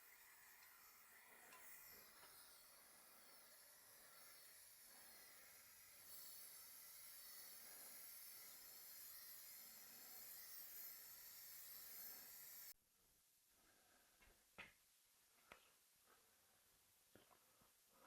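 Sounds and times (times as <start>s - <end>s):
spray paint can hissing: 0.0s - 12.8s.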